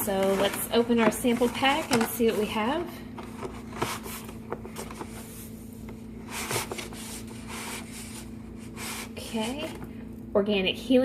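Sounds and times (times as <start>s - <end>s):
packaging rustling: 0.0s - 5.6s, 6.2s - 9.2s
steady low hum: 0.0s - 11.0s.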